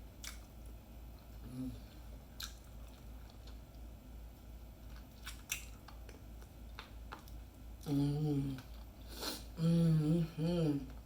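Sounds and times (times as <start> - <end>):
person chewing: 0.1 - 4.0, 4.7 - 9.6
person humming: 1.4 - 1.9, 7.8 - 11.0.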